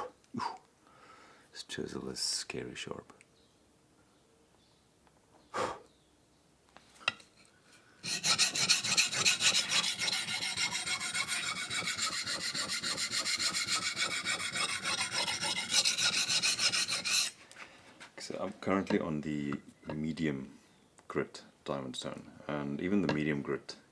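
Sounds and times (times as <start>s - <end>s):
blade scraping on sharpening stone: 8.0s - 17.4s.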